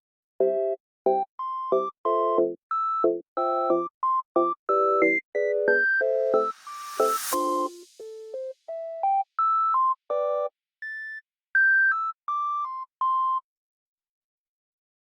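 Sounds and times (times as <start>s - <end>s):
electronic synthesizer melody: 1.8s - 9.2s.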